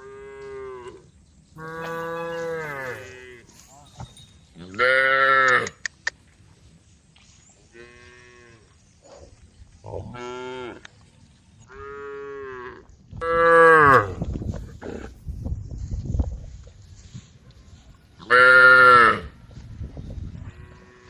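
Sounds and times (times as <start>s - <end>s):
cows mooing: 1.6s - 3.6s.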